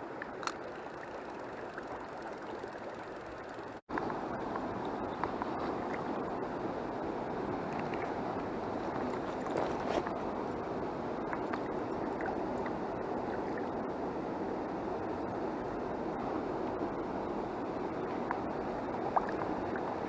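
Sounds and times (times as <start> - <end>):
small water splashes: 7.6 - 10.1, 18.0 - 20.0.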